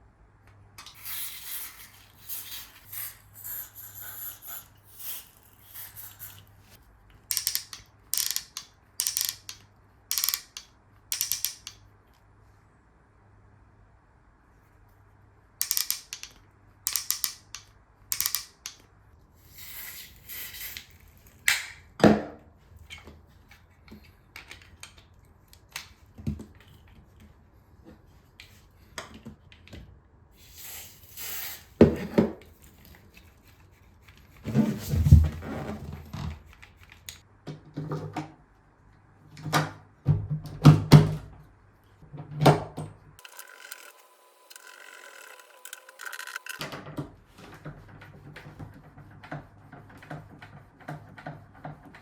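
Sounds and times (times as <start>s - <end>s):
spray can hissing: 1.0s - 6.6s.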